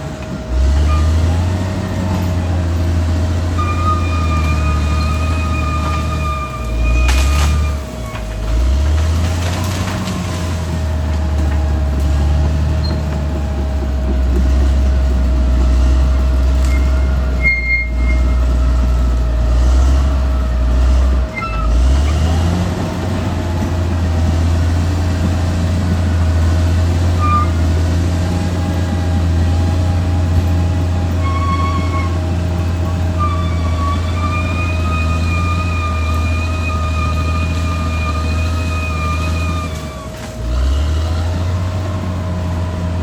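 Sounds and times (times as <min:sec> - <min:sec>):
bulldozer diesel engine drone: 0:00.0 - 0:43.0
constant whine: 0:00.0 - 0:43.0
short high squeaks: 0:03.5 - 0:08.6, 0:16.6 - 0:19.2, 0:21.3 - 0:22.3, 0:27.1 - 0:27.7, 0:31.0 - 0:40.3.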